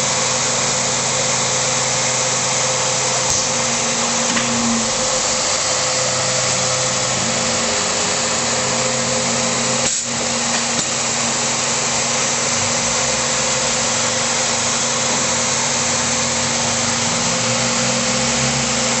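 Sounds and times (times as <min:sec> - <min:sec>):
woodworking machine whirring: 0:00.0 - 0:19.0.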